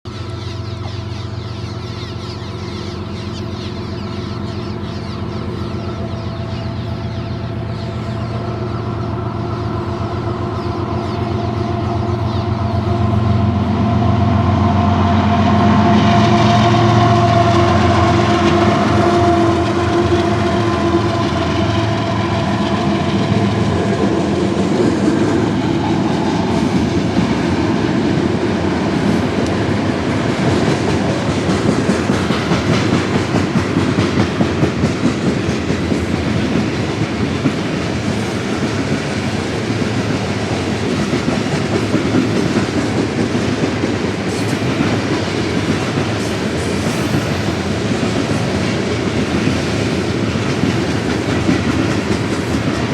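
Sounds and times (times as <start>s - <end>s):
diesel locomotive engine drone: 0.0s - 52.9s
train wheels clattering on rails: 0.1s - 52.9s.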